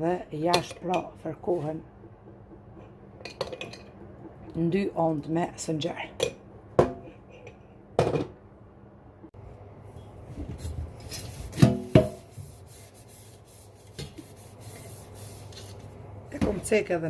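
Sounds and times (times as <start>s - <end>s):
sponge scrubbing metal teapot: 10.9s - 15.8s.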